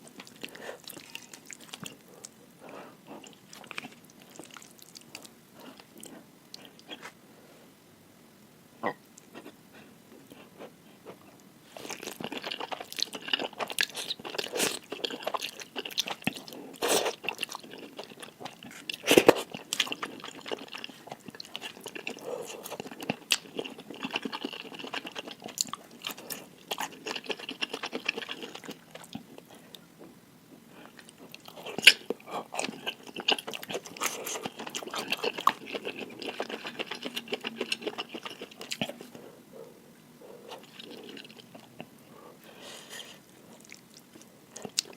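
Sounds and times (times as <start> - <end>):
chewing and biting noodles: 11.8 - 29.6, 30.8 - 39.1, 40.3 - 41.9.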